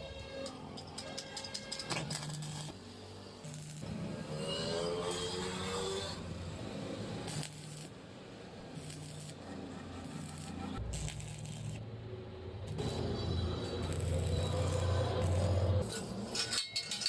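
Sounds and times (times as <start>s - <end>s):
metal clinking and scraping: 0.2s - 2.7s, 12.7s - 17.0s.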